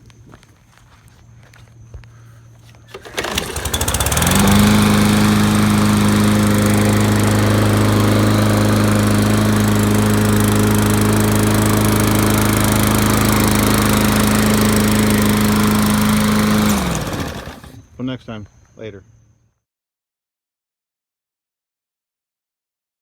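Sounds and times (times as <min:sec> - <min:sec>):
lawn mower engine running: 0:02.9 - 0:17.8
lawn mower pull start: 0:02.9 - 0:17.9.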